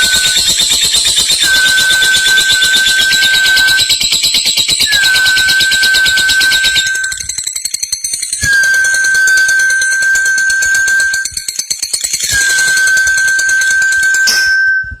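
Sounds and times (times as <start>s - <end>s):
steady high tone: 4.8s - 7.4s, 8.4s - 11.5s, 12.3s - 15.0s.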